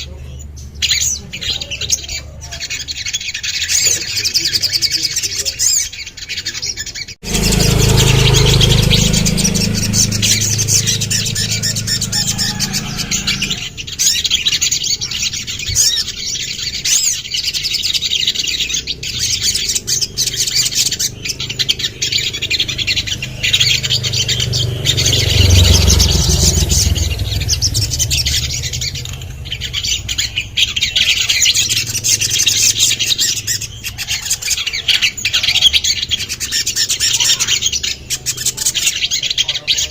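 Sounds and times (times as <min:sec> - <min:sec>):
bird chirps and trills: 0:00.0 - 0:39.9
low rumble: 0:07.2 - 0:14.0, 0:19.0 - 0:33.8.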